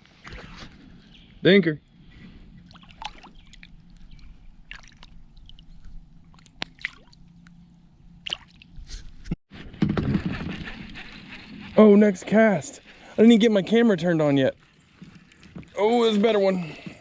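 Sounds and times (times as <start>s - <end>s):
water dripping and sloshing: 2.6s - 7.4s, 12.7s - 17.0s.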